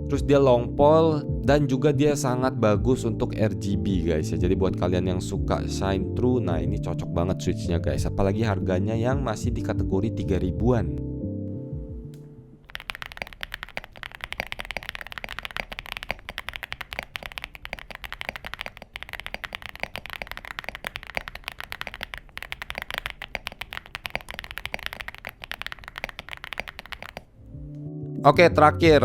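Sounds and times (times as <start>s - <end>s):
fast mechanical keyboard typing: 12.6s - 27.4s.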